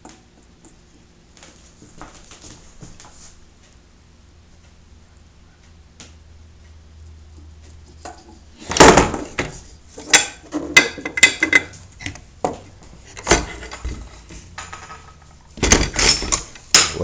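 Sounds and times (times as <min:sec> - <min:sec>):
metal clinks and knocks: 0:08.8 - 0:17.0.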